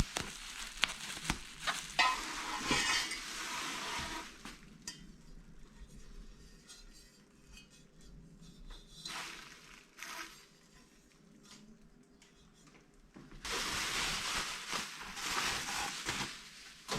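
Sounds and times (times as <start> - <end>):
packaging rustling: 0.0 - 2.2, 13.4 - 16.9.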